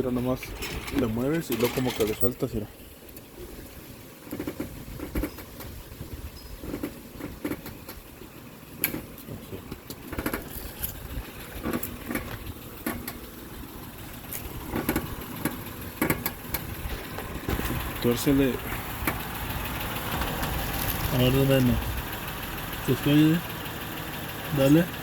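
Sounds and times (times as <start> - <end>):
suspension knocks and clunks: 0.0 - 23.4
car engine idling: 0.0 - 25.0.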